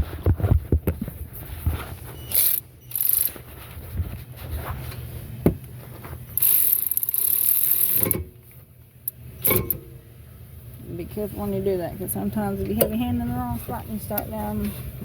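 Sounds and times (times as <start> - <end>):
power ratchet running: 2.3 - 3.4, 6.4 - 8.3.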